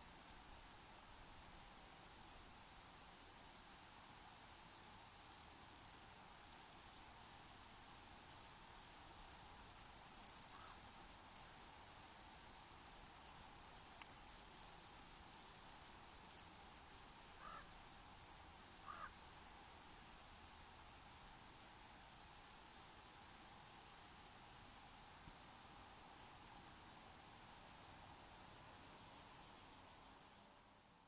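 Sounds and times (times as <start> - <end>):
soft steady hiss: 0.0 - 31.0
cricket chirping: 3.3 - 22.7.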